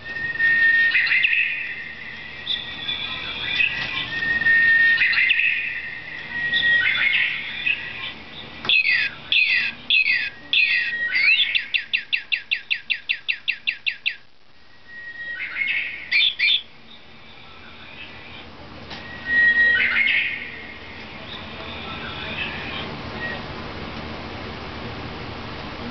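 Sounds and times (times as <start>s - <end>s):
toy bird chirping and trilling: 0.2s - 14.2s, 15.1s - 16.7s.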